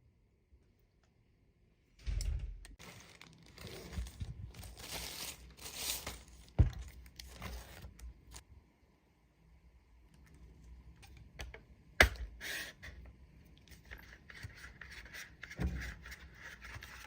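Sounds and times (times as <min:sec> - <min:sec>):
packaging crinkling and tearing: 0:02.8 - 0:08.4.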